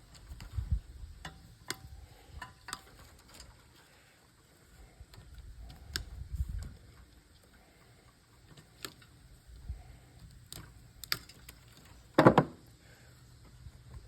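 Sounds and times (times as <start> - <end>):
wire cutters snipping wire: 8.5 - 9.1, 10.2 - 12.0.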